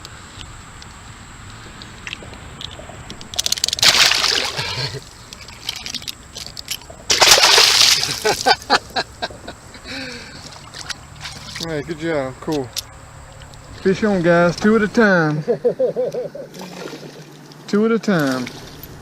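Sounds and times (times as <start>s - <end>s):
fish splashing in water: 3.4s - 8.6s, 16.5s - 17.4s.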